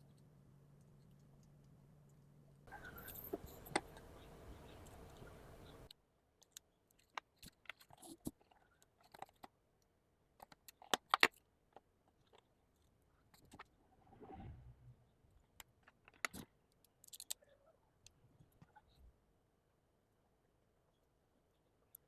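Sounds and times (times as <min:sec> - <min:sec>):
small hard objects clicking: 0:10.4 - 0:12.5, 0:15.6 - 0:17.4.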